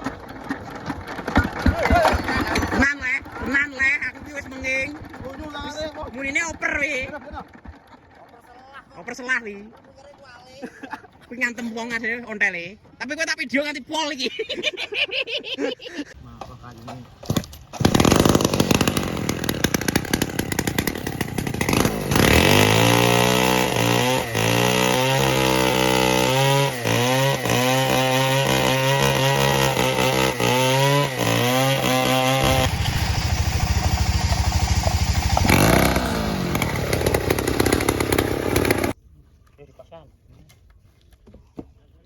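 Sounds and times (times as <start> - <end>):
small diesel engine running: 0.0 - 8.6, 17.8 - 39.0.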